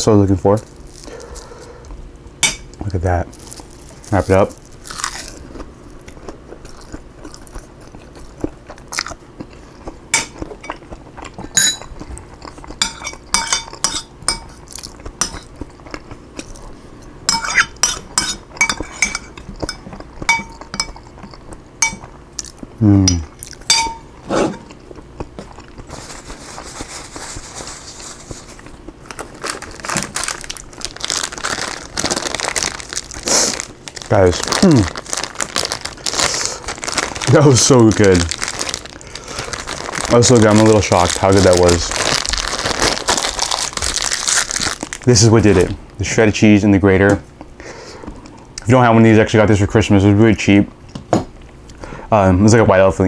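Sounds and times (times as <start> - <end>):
crunchy chewing: 0.6 - 2.0, 2.6 - 18.6, 19.3 - 45.7
utensil clinking on dish: 11.6 - 11.9, 12.8 - 14.5, 17.3 - 21.1, 21.8 - 22.1, 23.1 - 24.1.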